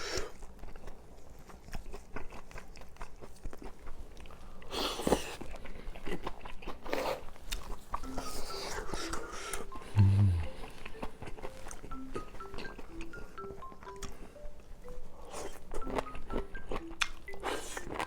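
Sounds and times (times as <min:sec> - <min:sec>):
wet chewing mouth clicks: 0:15.2 - 0:18.0.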